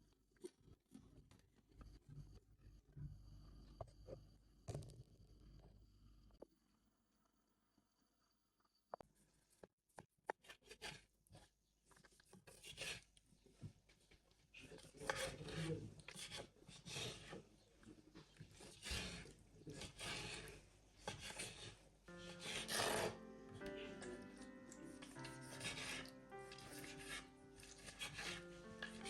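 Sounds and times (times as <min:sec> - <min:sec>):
rasping scraping strokes: 0:18.6 - 0:29.0
soft background music: 0:22.1 - 0:29.0.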